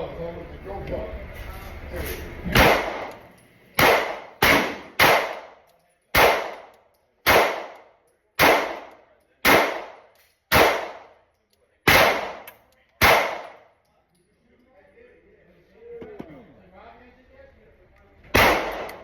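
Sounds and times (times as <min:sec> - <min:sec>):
pistol shots: 0:02.5 - 0:11.2, 0:11.9 - 0:13.7, 0:18.3 - 0:19.0.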